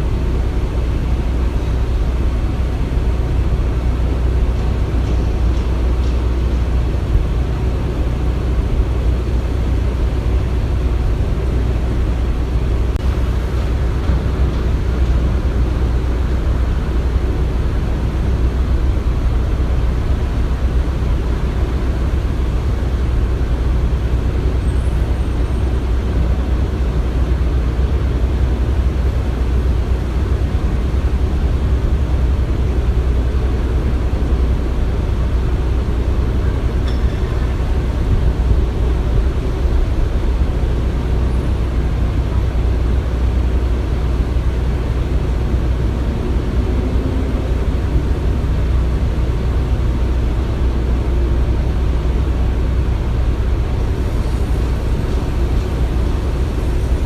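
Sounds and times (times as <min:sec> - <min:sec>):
heavy machinery rumble: 0:00.0 - 0:57.0
faint high clinks: 0:36.8 - 0:37.7.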